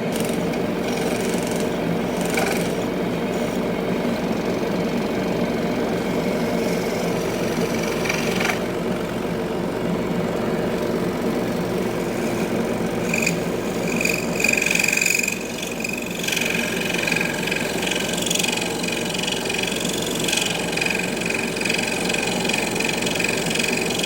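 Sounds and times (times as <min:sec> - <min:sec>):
scroll saw cutting wood: 0:00.0 - 0:03.7, 0:06.2 - 0:08.8, 0:11.8 - 0:24.0.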